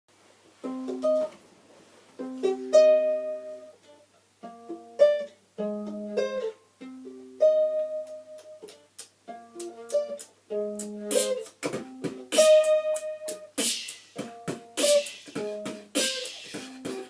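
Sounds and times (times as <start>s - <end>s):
plucked string instrument music: 0.6s - 1.4s, 2.2s - 17.0s.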